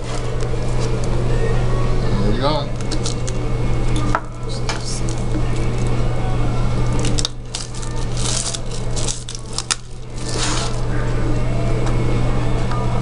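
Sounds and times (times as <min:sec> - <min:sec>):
steady low hum: 0:00.0 - 0:13.0
packaging and cards rustling: 0:06.8 - 0:10.9.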